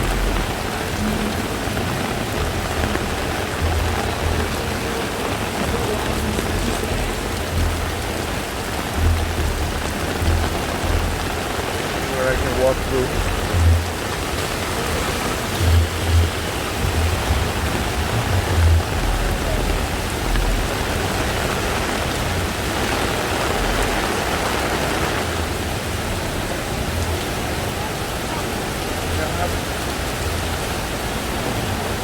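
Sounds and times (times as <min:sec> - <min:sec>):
low thumps: 0:00.0 - 0:24.2
heavy rain pouring: 0:00.0 - 0:32.0.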